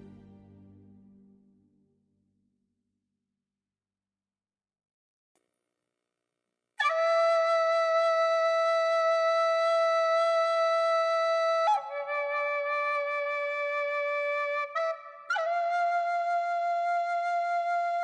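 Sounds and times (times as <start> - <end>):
flute-like long notes: 6.8 - 18.0.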